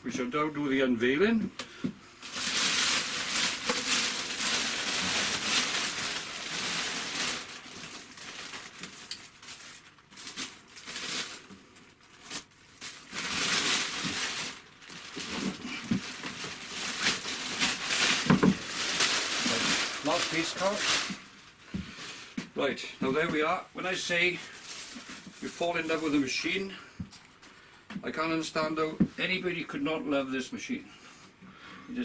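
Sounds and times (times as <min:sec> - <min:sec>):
packing wrap rustling and crinkling: 0:02.2 - 0:22.5, 0:23.2 - 0:27.4.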